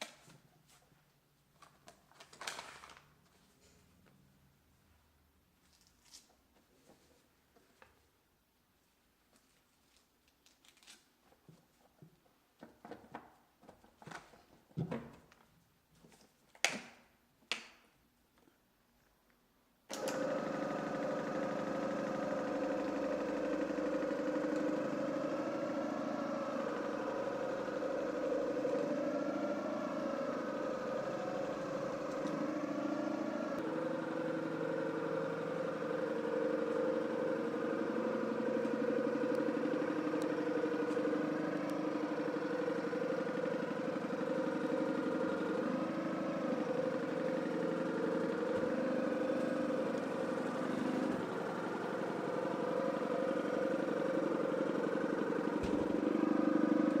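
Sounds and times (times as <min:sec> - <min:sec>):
spin mop motor humming: 0:19.9 - 0:57.0.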